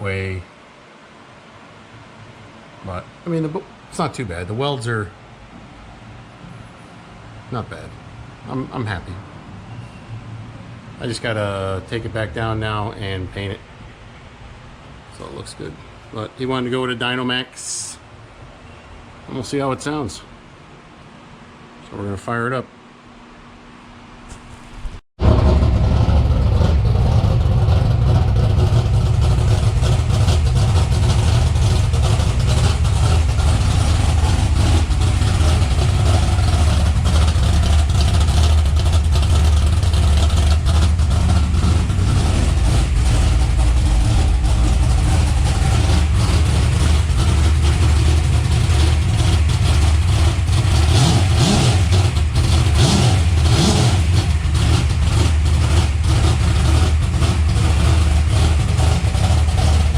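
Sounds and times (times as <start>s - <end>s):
pickup engine exhaust rumble: 24.2s - 59.9s.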